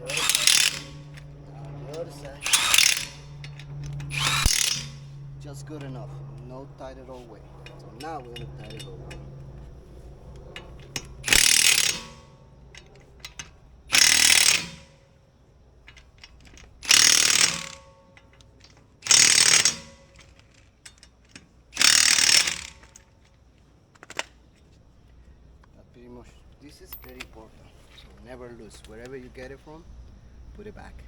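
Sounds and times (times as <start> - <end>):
impact gun hammering lug nuts: 0.0 - 15.2, 15.9 - 23.3
faint clicks of tool and nuts: 0.0 - 29.6.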